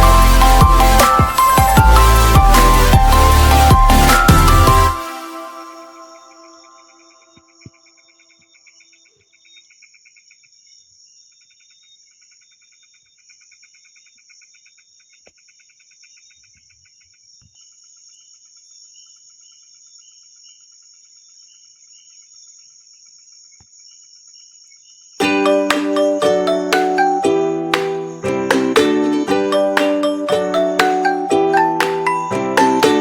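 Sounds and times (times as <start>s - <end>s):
pulsing insect trills: 5.0s - 25.2s
faint ticks: 7.4s - 19.6s.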